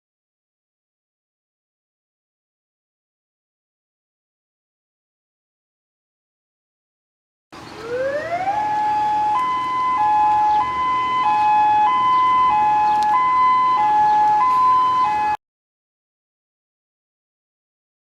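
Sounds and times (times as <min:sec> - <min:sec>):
electronic emergency alert siren: 0:07.8 - 0:15.4.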